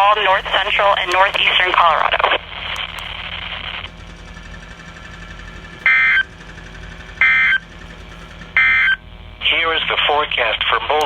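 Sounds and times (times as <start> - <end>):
radio hiss and hum: 0.0 - 4.0, 8.6 - 11.0.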